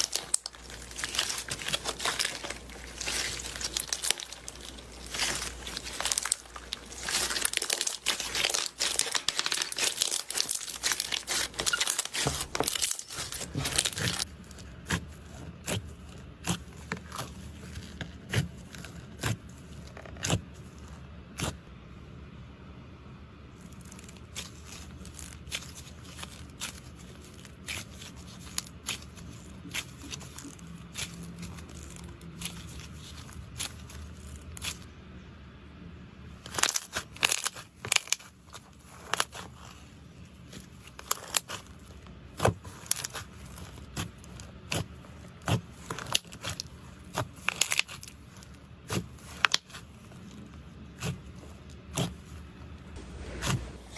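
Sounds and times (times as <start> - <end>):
slime crackling and popping: 0.0 - 21.6, 23.7 - 34.9, 36.4 - 52.5.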